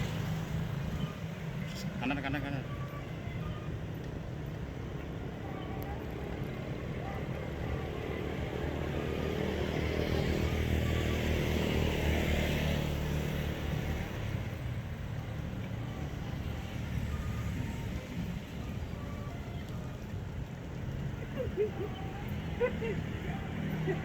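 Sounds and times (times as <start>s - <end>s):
vehicle passing by: 7.7s - 14.6s.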